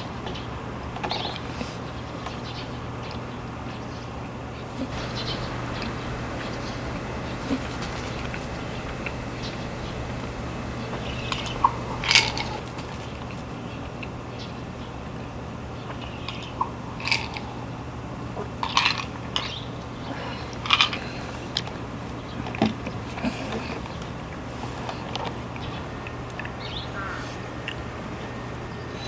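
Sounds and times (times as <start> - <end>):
steady low hum: 4.5 - 14.0
dog crunching dry food: 4.8 - 14.1.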